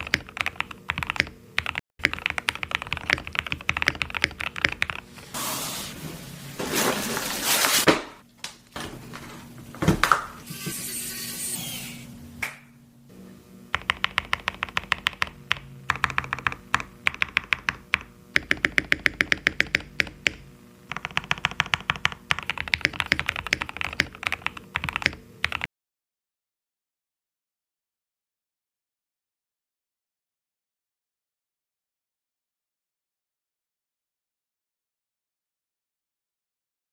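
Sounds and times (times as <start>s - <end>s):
typing on mechanical keyboard: 0.0s - 5.0s, 13.8s - 25.7s.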